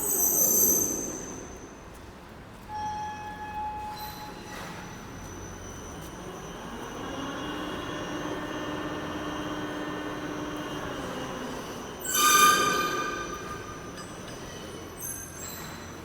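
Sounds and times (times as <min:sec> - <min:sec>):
machinery drone: 0:06.1 - 0:15.0.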